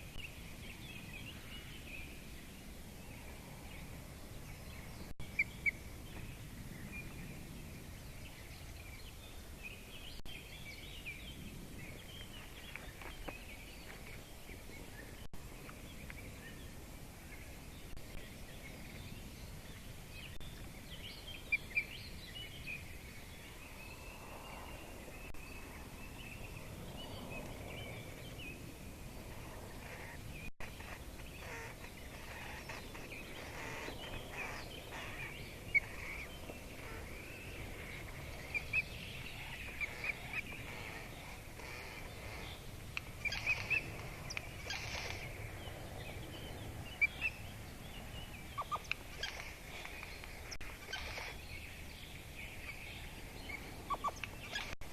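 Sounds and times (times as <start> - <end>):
birds chirping: 0.0 - 54.9.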